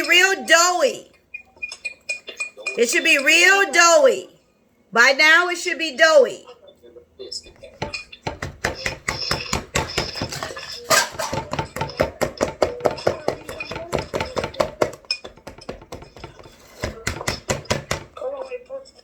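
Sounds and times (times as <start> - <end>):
utensil beating dough in bowl: 7.4 - 19.0.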